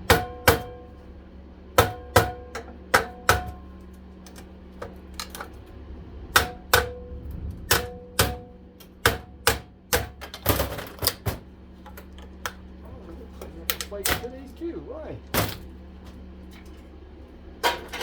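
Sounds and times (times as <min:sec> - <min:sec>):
hammer striking metal: 0:00.0 - 0:00.9, 0:01.8 - 0:03.6, 0:06.3 - 0:07.1, 0:07.7 - 0:10.4.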